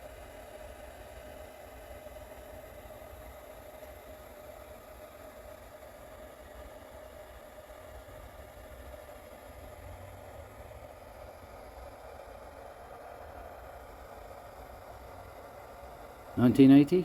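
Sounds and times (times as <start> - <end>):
faint steady tone: 0.0 - 17.0
background hiss: 15.7 - 17.0.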